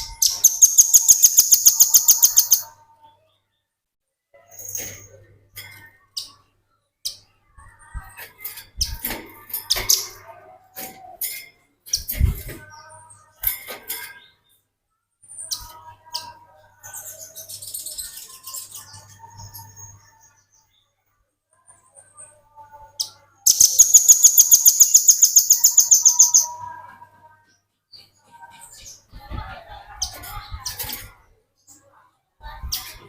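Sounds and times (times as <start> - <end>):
birds chipping and rattling: 0.0 - 2.7, 8.4 - 12.7, 23.0 - 26.6.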